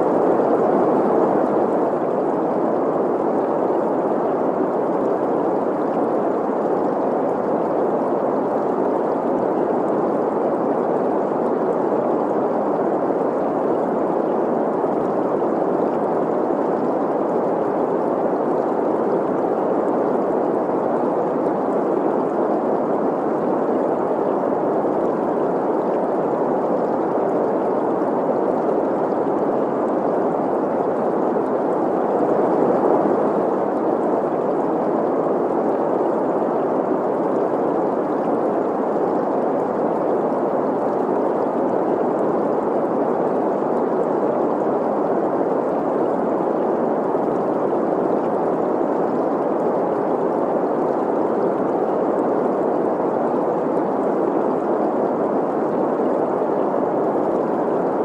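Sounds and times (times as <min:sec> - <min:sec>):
flowing stream: 0:00.0 - 0:58.0.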